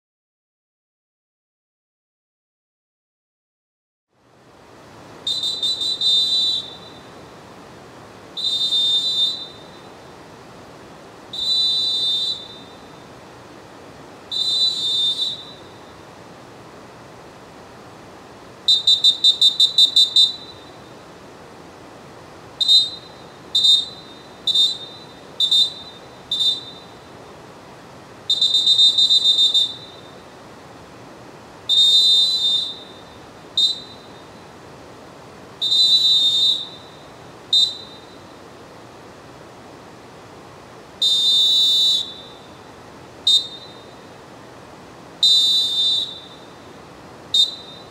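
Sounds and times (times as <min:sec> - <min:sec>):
referee whistle blasts: 0:05.3 - 0:07.1, 0:08.4 - 0:09.9, 0:11.3 - 0:13.0, 0:14.3 - 0:16.0, 0:18.7 - 0:21.0, 0:22.6 - 0:27.1, 0:28.3 - 0:30.2, 0:31.7 - 0:34.4, 0:35.6 - 0:38.3, 0:41.0 - 0:42.6, 0:43.3 - 0:44.0, 0:45.2 - 0:46.6, 0:47.3 - 0:47.9.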